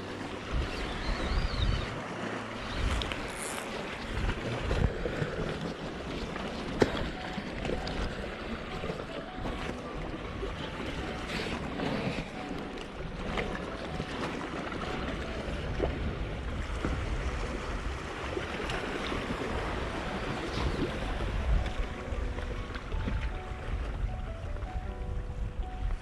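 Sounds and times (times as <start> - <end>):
waves washing on rocks: 0.0 - 22.3
wind rumbling on microphone: 0.0 - 26.0.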